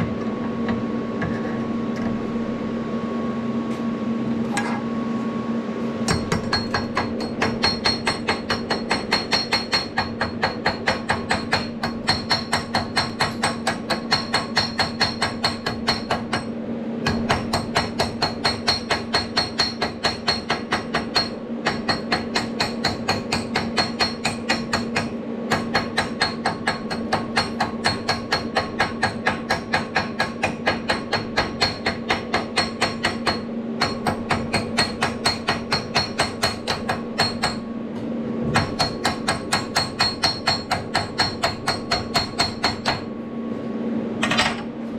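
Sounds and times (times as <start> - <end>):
steady low hum: 0.0 - 44.9
hammer strikes on metal: 6.1 - 37.6, 38.5 - 43.1.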